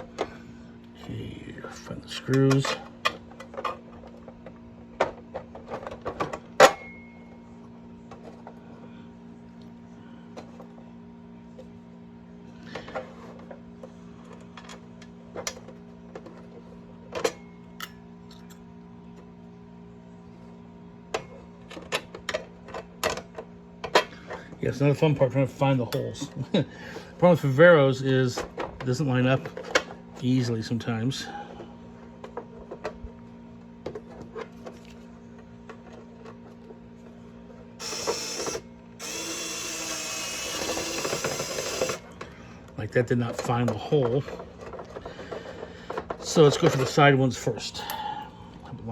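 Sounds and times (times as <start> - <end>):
steady low hum: 0.0 - 48.9
screws and case clicking: 37.8 - 42.0.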